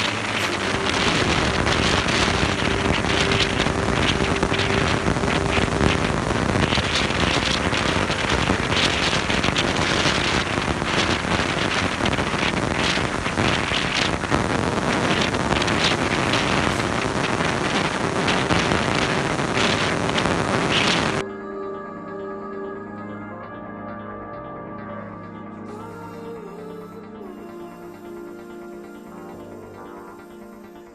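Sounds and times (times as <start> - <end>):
white water rushing: 0.0 - 21.2.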